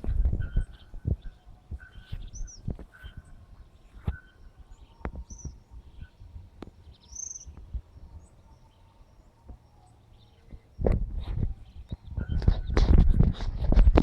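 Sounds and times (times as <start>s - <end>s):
small bird chirping: 0.4s - 12.8s.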